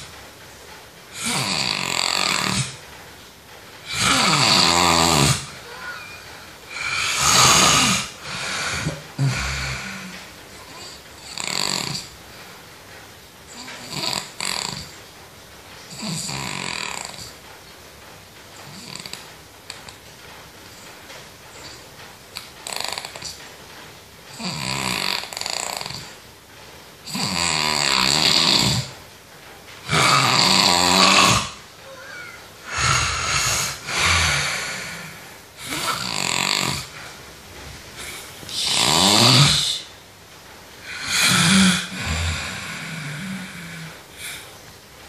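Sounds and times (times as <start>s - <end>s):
person snoring loudly: 1.1s - 2.8s, 3.8s - 12.1s, 13.5s - 14.9s, 15.9s - 17.3s, 24.3s - 26.1s, 27.1s - 28.9s, 29.8s - 37.2s, 38.0s - 39.9s, 40.8s - 44.5s.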